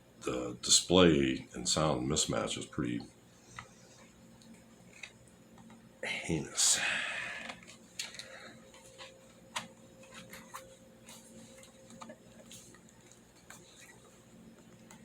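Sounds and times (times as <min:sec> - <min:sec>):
low steady hum: 0:00.0 - 0:15.0.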